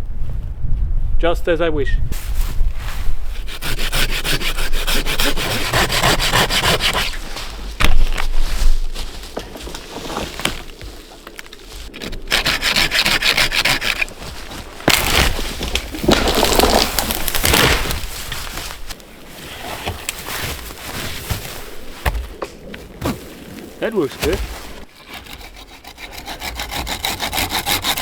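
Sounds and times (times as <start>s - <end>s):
hand saw cutting wood: 3.3s - 7.4s, 12.0s - 18.0s, 24.2s - 28.0s.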